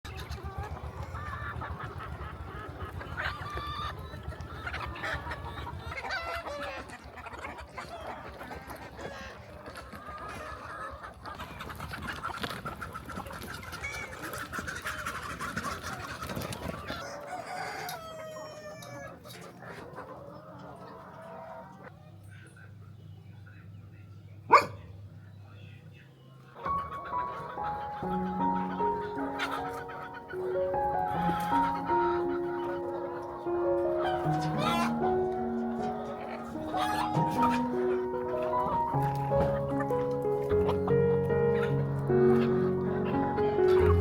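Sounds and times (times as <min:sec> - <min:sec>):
chickens clucking: 0:00.1 - 0:23.6, 0:25.5 - 0:44.0
roosters crowing: 0:16.7 - 0:19.4.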